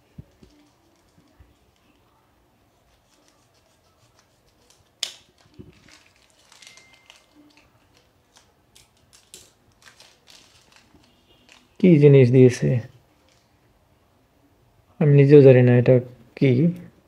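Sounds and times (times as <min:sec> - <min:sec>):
packaging rustling: 0:04.1 - 0:11.9.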